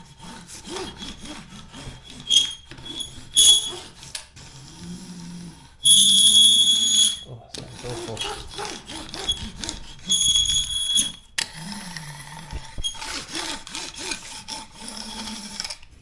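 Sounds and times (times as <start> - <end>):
hand tool scraping liner: 0.0 - 4.7, 5.8 - 11.2, 12.5 - 15.8
high squeak: 2.0 - 3.9, 5.8 - 7.3, 9.0 - 11.3, 12.6 - 13.2.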